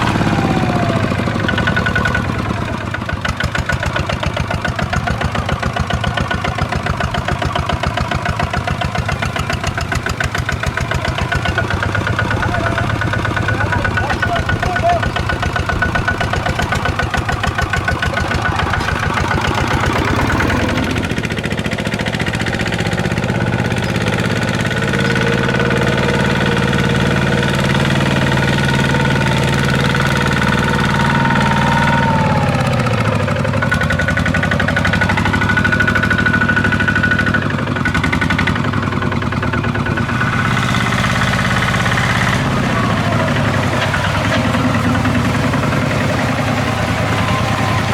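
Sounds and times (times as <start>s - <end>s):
diesel engine knocking: 0.0s - 47.9s.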